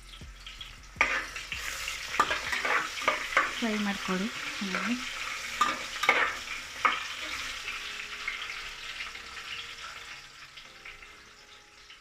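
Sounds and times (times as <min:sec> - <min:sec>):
onions sizzling in hot oil: 0:00.0 - 0:12.0
spoon knocking on pan: 0:01.0 - 0:01.6, 0:02.2 - 0:03.6, 0:05.6 - 0:07.4.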